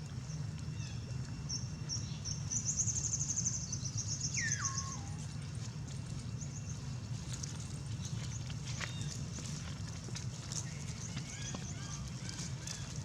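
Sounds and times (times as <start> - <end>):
bird chirping trill: 4.3 - 5.1.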